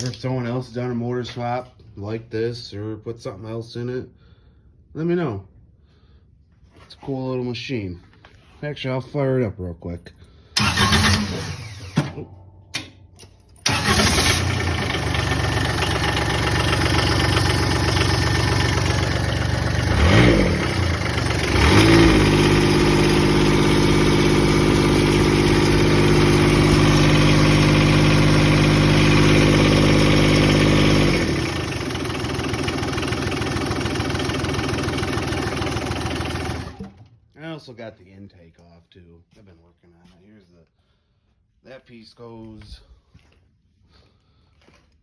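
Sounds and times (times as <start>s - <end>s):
diesel engine starting and idling: 10.6s - 12.9s, 13.5s - 37.2s.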